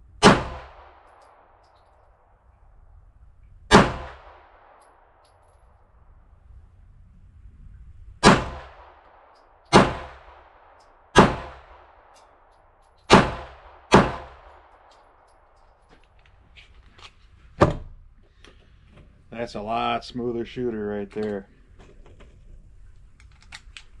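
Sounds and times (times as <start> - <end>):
pistol shots: 0.2 - 1.8, 3.7 - 5.3, 8.2 - 12.3, 13.0 - 15.2.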